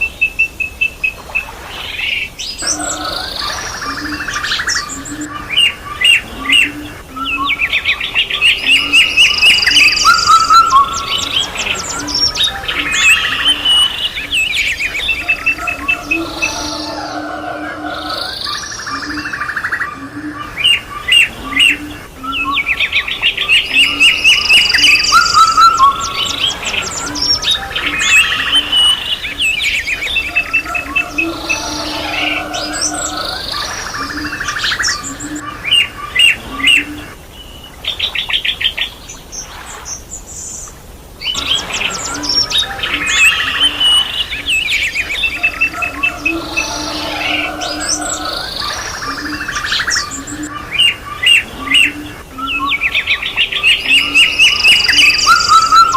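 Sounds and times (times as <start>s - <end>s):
birds trilling and chirping: 0.0s - 55.9s
low repeated bird calls: 0.0s - 55.9s.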